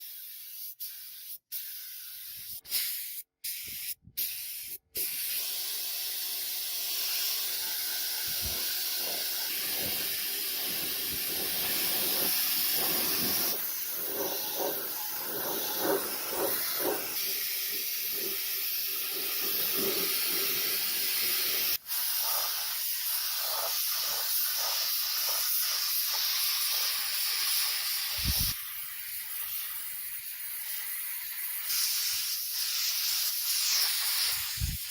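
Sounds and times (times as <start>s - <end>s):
steady hiss: 6.7s - 34.9s.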